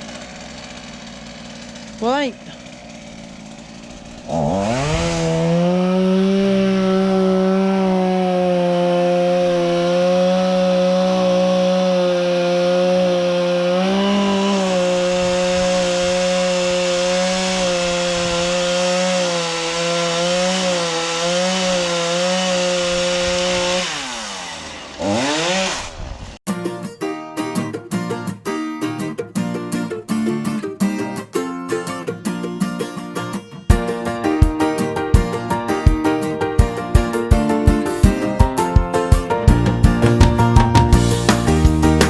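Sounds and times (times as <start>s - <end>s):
chainsaw cutting tree: 0.0s - 26.4s.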